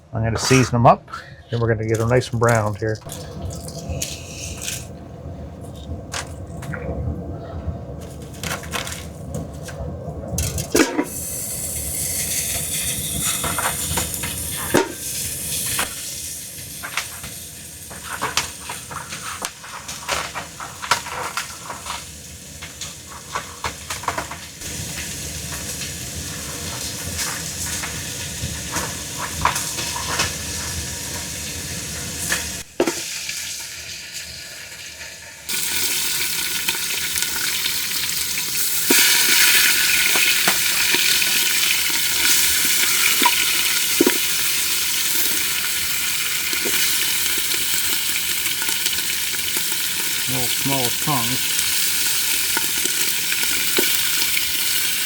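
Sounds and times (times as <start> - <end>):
meat sizzling in a pan: 2.0 - 6.9, 10.4 - 55.0
utensil knocking against pan: 14.7 - 15.1.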